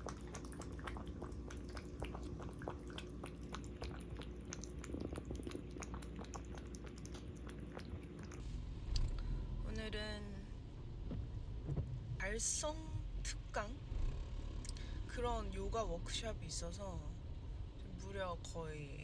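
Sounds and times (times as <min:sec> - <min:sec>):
cat chewing clicks: 0:00.0 - 0:08.4.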